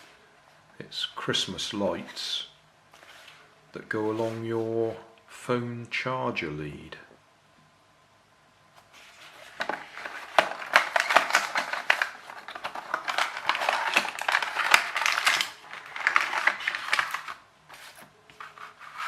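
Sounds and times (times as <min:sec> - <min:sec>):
packaging crackling and clicking: 0:09.3 - 0:19.0.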